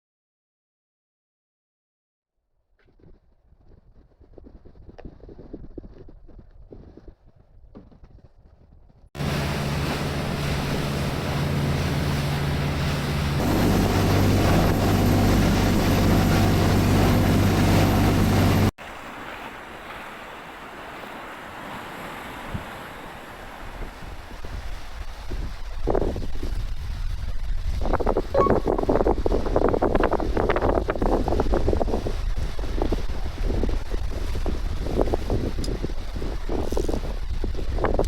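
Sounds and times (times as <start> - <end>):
wind: 2.4 - 38.0
boat engine running: 9.2 - 18.7, 28.2 - 29.6
water and surf: 9.2 - 38.0.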